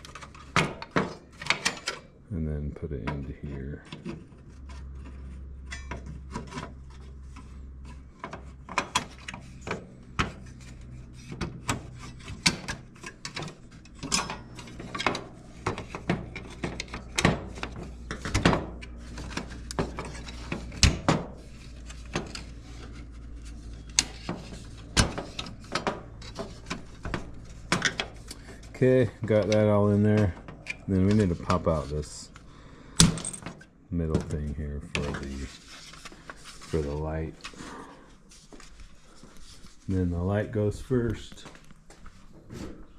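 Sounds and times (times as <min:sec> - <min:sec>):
metal parts clicking and scraping: 0:00.0 - 0:02.2, 0:03.8 - 0:28.8, 0:29.4 - 0:33.7
low steady hum: 0:00.0 - 0:42.9.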